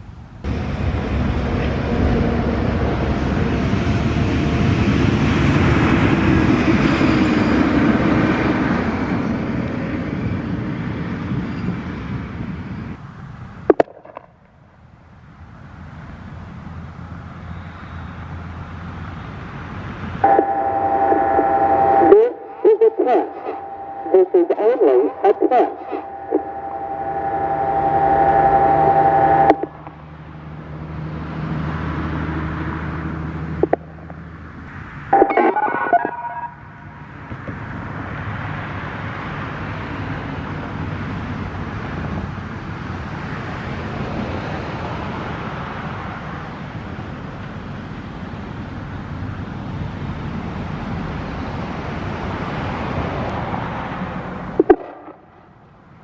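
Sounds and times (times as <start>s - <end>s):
even rushing noise: 0.0s - 14.4s
low hum: 0.0s - 31.4s
siren steady tone: 20.2s - 29.9s, 34.7s - 37.3s, 54.6s - 55.3s.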